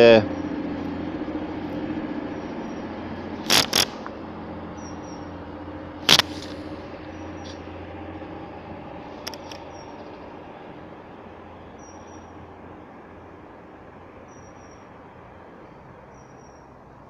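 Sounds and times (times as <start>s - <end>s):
train diesel engines droning: 0.0s - 17.0s
sharp click: 3.4s - 4.1s, 6.1s - 6.6s, 9.2s - 9.7s.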